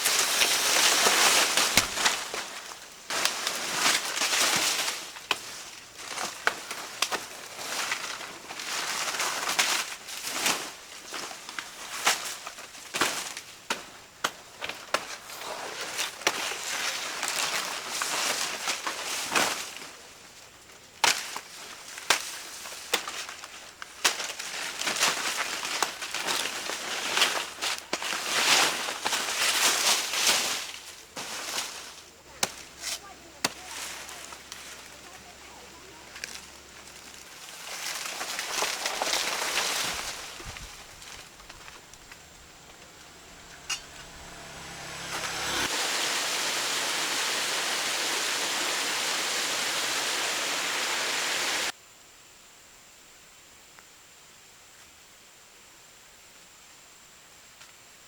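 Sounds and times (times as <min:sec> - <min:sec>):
crunching and rustling: 0:00.0 - 0:45.8
sharp snaps and knocks: 0:00.4 - 0:02.4.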